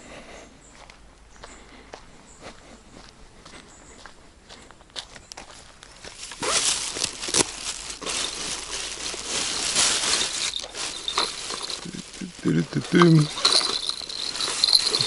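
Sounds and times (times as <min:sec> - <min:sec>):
plastic packs rustling: 0:06.2 - 0:15.0.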